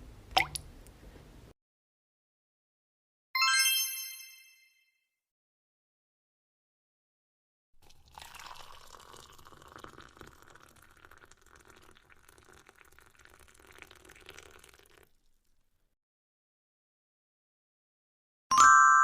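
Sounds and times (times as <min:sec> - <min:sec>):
tea pouring into a cup: 0:07.8 - 0:15.6.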